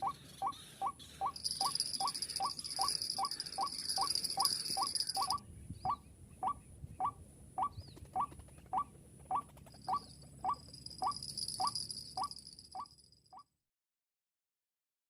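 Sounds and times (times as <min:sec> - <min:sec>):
waterhen calling: 0:00.0 - 0:12.9.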